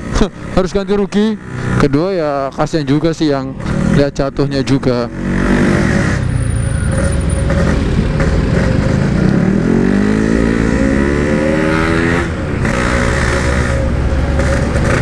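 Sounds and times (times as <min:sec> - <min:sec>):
two-stroke motorcycle engine revving: 0:03.6 - 0:15.0.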